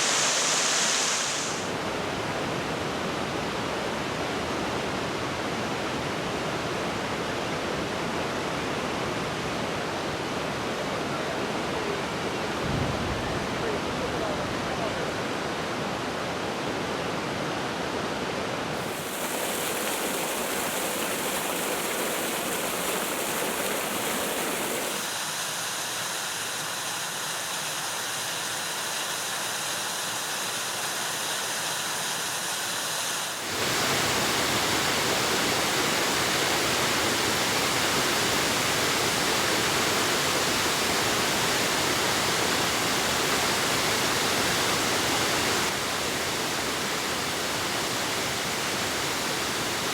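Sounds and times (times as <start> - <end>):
waterfall roaring: 0.0 - 2.5, 18.7 - 25.3, 33.4 - 49.9.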